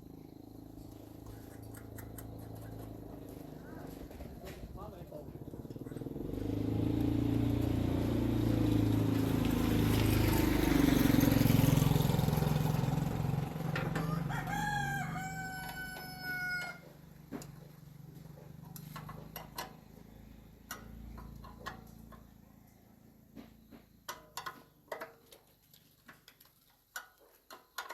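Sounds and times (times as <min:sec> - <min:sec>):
engine hum: 0:00.0 - 0:26.3
rooster crowing: 0:13.8 - 0:17.0.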